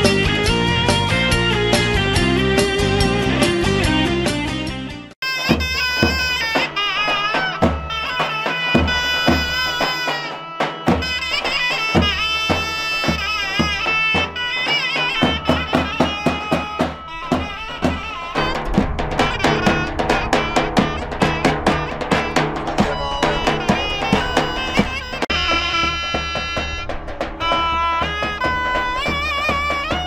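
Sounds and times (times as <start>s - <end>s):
drum beats: 0.0s - 30.0s
ornamented wind instrument melody: 5.2s - 30.0s
steady drone: 15.0s - 30.0s.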